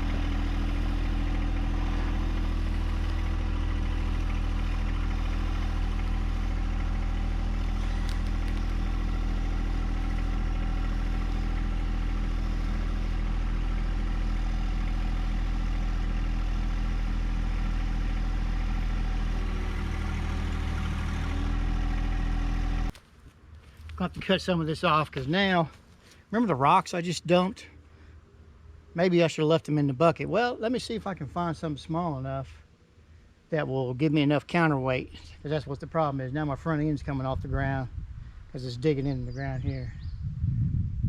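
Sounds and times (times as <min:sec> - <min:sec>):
tractor diesel engine running: 0:00.0 - 0:27.5.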